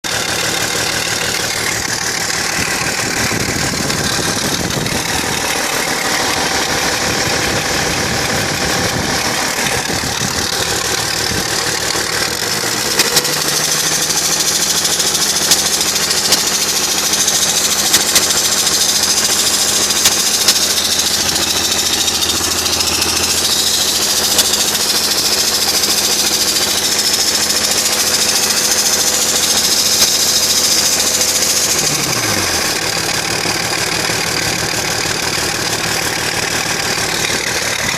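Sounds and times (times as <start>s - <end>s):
diesel engine running with ticking: 0.0s - 37.9s
sharp clicks: 9.3s - 25.0s, 28.1s - 32.9s.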